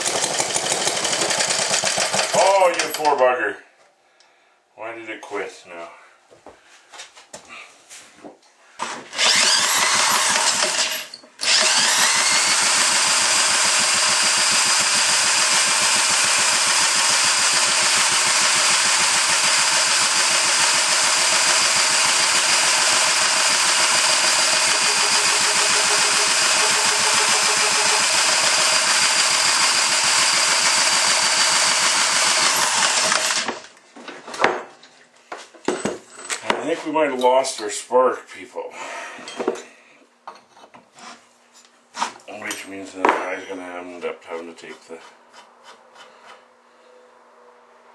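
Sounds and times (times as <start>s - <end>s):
engine running fast: 23.5s - 29.5s.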